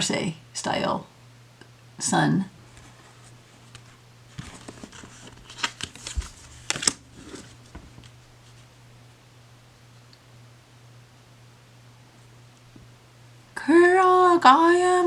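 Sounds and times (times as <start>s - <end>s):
cards clicking and rustling: 3.6s - 8.2s.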